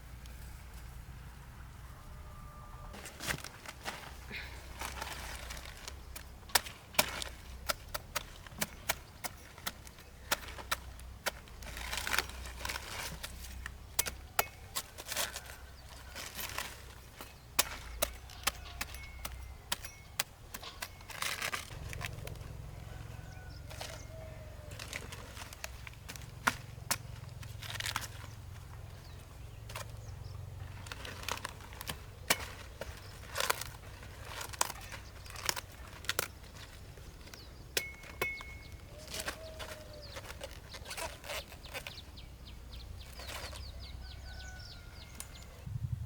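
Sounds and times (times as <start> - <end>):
rustling: 2.9 - 45.7.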